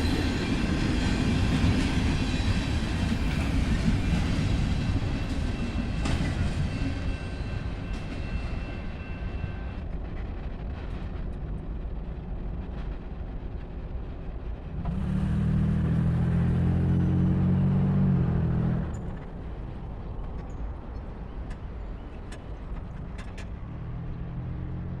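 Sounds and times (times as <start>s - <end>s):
freight train rumble: 0.0s - 25.0s
traffic noise: 14.8s - 25.0s.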